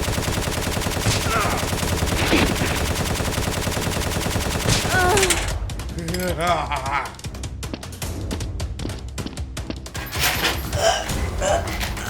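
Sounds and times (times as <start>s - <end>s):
rapid automatic gunfire: 0.0s - 5.2s.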